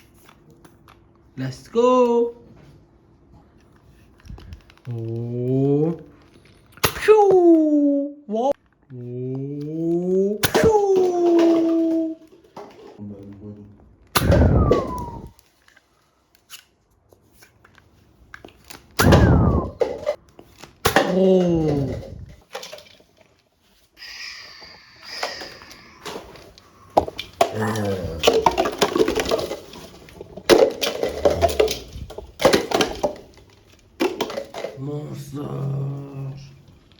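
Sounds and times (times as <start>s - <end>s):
toy gun blast with whistle: 14.2s - 15.4s, 19.0s - 20.0s.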